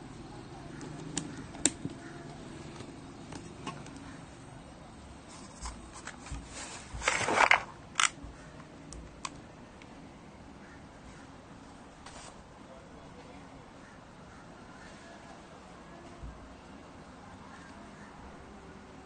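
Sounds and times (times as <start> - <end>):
rustling scrape: 5.3 - 7.7.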